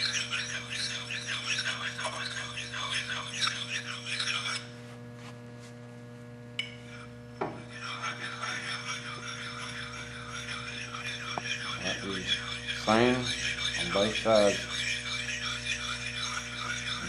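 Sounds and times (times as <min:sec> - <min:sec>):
sharpening stone rubbing on axe: 0:00.0 - 0:04.7, 0:07.7 - 0:17.0.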